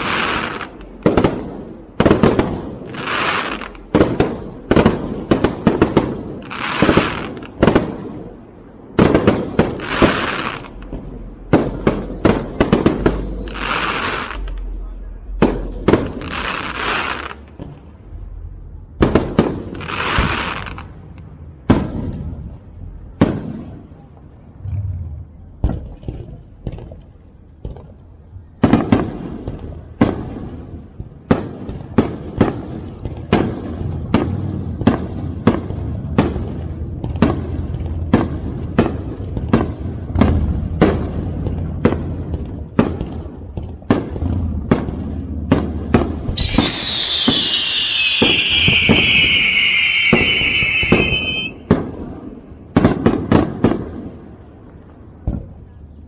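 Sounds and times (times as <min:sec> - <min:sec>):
crackling firework hisses: 0:00.0 - 0:01.0, 0:02.8 - 0:03.9, 0:13.1 - 0:14.6, 0:16.1 - 0:17.5, 0:19.7 - 0:21.0, 0:46.3 - 0:51.7
fireworks booms: 0:00.0 - 0:55.8
sharp firework bangs: 0:31.3 - 0:54.1.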